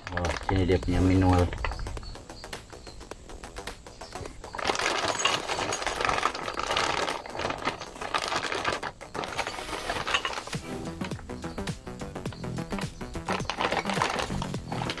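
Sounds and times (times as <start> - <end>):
crinkly packaging rustling: 0.0 - 1.9, 3.6 - 15.0.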